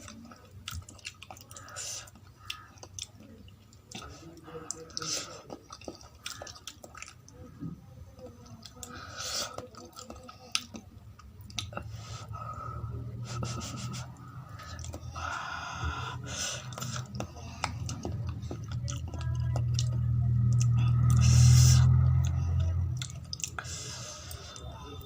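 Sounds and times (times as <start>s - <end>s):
person chewing food: 0.0s - 25.0s
mouth clicks and smacks: 16.6s - 23.7s.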